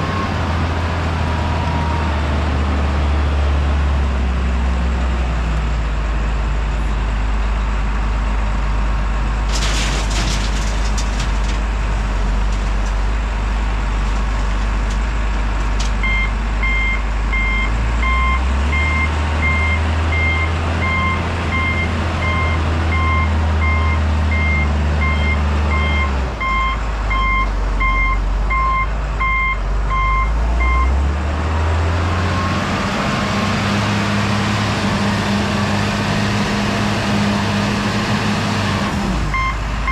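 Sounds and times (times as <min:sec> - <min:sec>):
heavy truck engine running: 0:00.0 - 0:39.9
reversing alarm beeping: 0:16.0 - 0:30.9.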